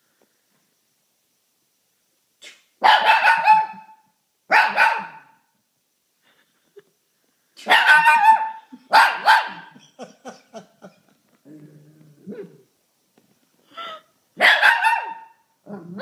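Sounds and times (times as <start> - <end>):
dog howling barks: 2.8 - 5.4, 7.7 - 9.8, 14.4 - 16.0.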